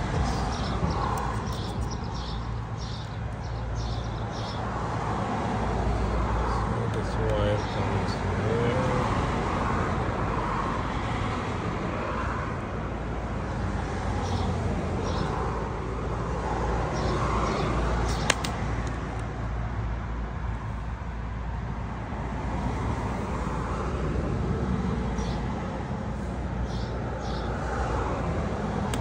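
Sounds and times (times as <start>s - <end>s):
low rumble of distant traffic: 0.0s - 29.0s
sharp click: 18.1s - 19.3s.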